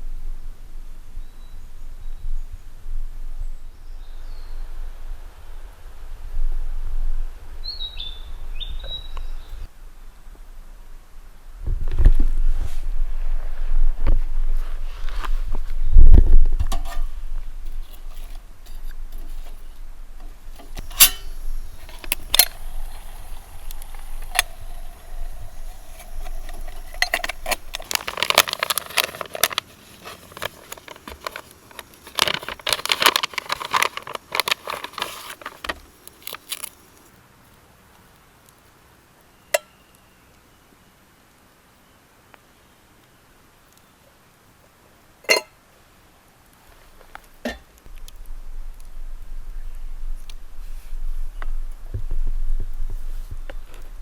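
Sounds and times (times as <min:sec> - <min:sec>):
metal camp gear clattering: 0:16.6 - 0:36.8.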